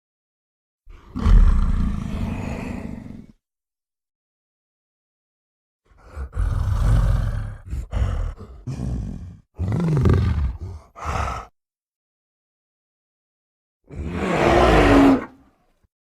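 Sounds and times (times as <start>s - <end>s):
gorilla grunting roars: 0.9s - 3.4s, 5.9s - 11.5s, 13.9s - 15.4s
gorilla roaring: 0.9s - 3.4s, 5.9s - 11.5s, 13.9s - 15.4s.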